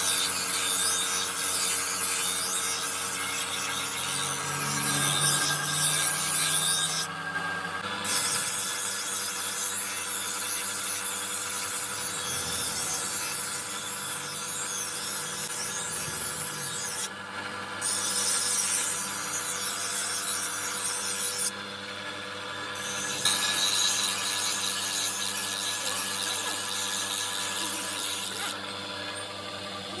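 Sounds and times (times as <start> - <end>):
sharpening tool rasping on steel blade: 22.8 - 30.0.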